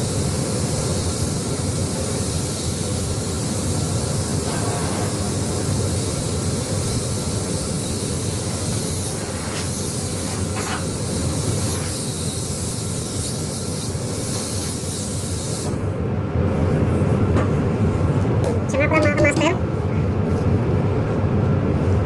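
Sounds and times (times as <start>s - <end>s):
paint spray gun hissing: 0.0s - 15.8s.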